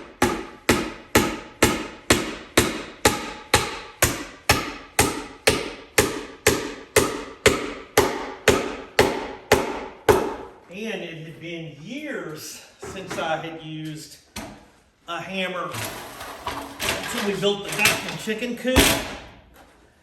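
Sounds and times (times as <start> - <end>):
hammer driving nails into wood: 0.2 - 10.4.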